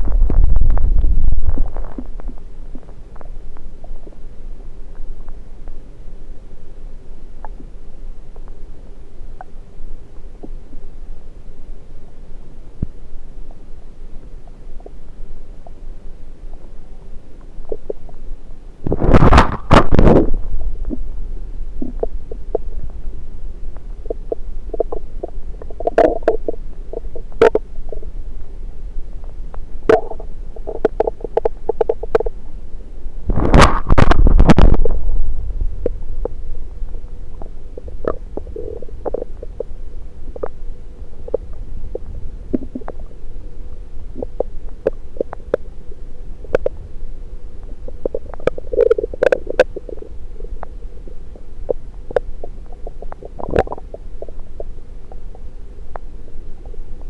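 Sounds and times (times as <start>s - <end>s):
stomach gurgles and pops: 0.0s - 4.3s, 4.9s - 5.8s, 7.4s - 8.6s, 16.4s - 28.5s, 29.1s - 32.6s, 33.2s - 45.8s, 46.4s - 47.0s, 47.6s - 57.0s
gushing bowel rumble: 51.6s - 55.5s.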